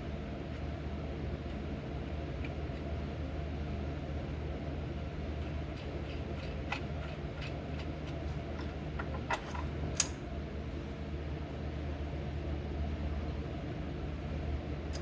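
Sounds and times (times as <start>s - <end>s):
metallic clicks of hand tools: 8.6s - 10.2s
sharp metal click: 8.6s - 10.2s.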